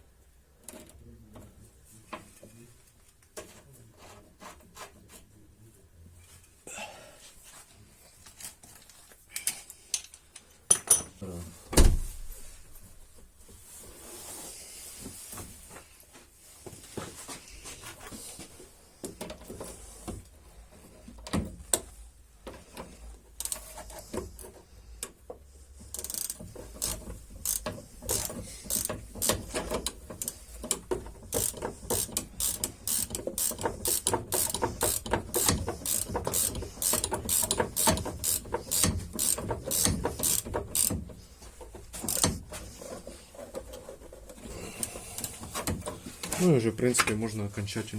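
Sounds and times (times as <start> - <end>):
ratchet wrench clicking: 25.9 - 41.0, 42.0 - 42.4.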